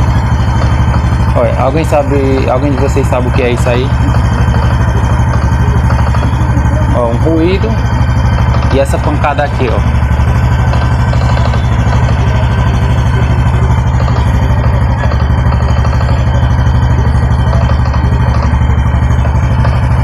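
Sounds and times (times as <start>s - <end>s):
light engine knock: 0.0s - 20.0s
motorcycle engine idling: 0.0s - 20.0s.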